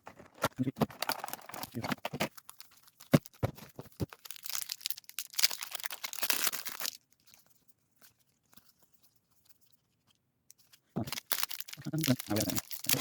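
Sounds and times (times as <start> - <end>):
foil wrapper tearing and crinkling: 0.8 - 7.1, 11.0 - 13.0.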